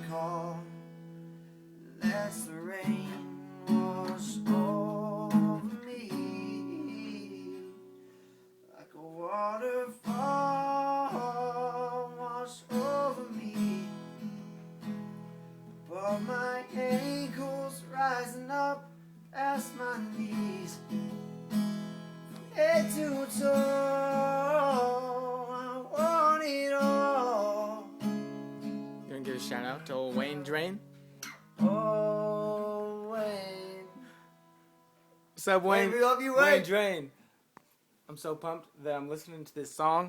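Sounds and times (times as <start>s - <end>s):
strummed acoustic guitar: 0.0s - 36.8s
person singing: 1.9s - 7.9s, 8.8s - 14.5s, 15.9s - 21.0s, 22.4s - 28.0s, 31.6s - 34.1s.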